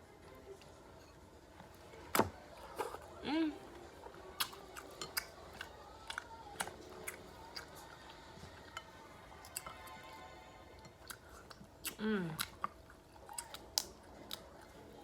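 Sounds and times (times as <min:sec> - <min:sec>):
chewing: 0:03.9 - 0:10.0, 0:10.8 - 0:15.0.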